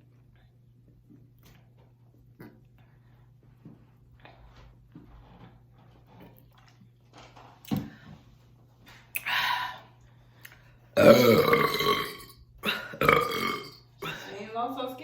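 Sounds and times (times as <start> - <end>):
loud deep burp: 11.0 - 14.2.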